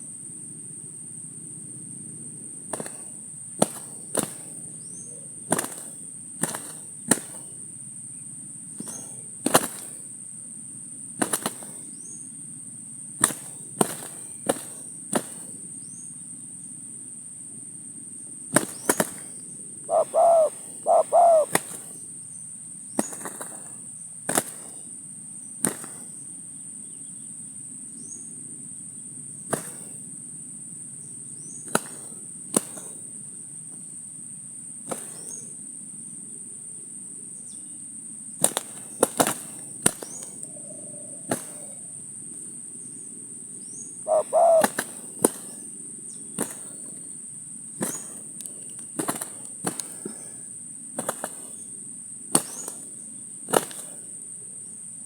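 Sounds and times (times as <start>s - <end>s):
high insect drone: 0.0s - 55.0s
dove cooing: 19.8s - 22.0s, 40.2s - 42.0s, 44.0s - 45.6s.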